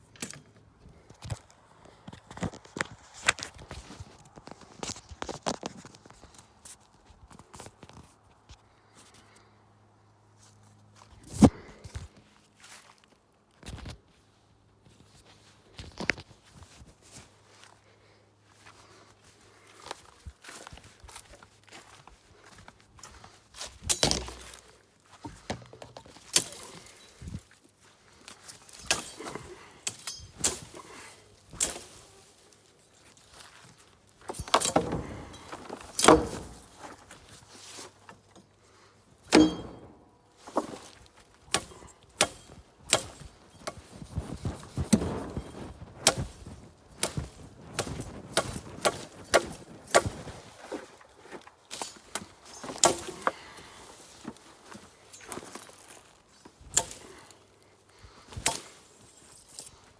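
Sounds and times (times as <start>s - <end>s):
hand tool chopping plants: 23.7s - 27.4s, 28.4s - 32.3s, 34.2s - 38.4s, 39.3s - 51.0s, 51.7s - 57.4s, 58.1s - 59.8s.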